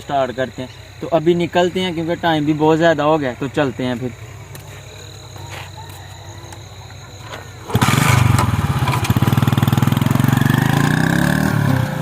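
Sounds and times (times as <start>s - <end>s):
motorcycle engine starting and running: 6.8s - 12.0s.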